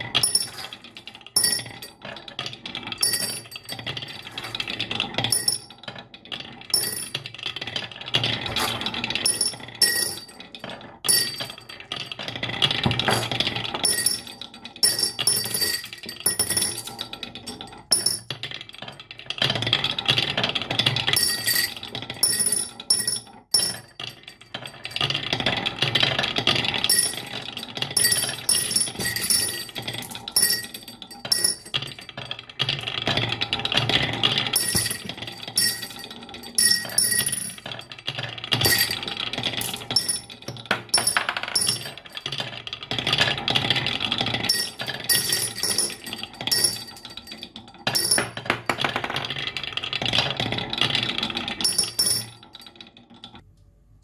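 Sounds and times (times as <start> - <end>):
marbles clattering down track: 0.0 - 53.4.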